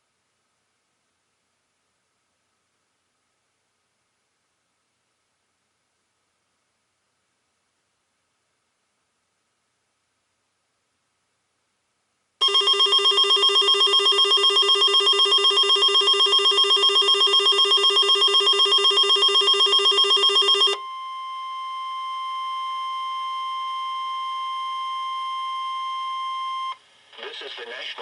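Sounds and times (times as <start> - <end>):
pulsing electronic alarm trill: 12.4 - 21.7
steady alarm tone: 12.4 - 26.8.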